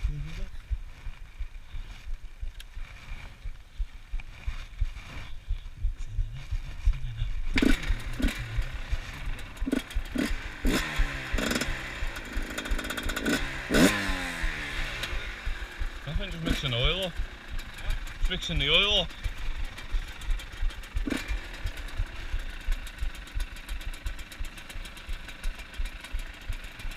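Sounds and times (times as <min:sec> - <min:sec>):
low rumble: 0:00.0 - 0:26.9
dirt bike engine revving: 0:06.2 - 0:26.9.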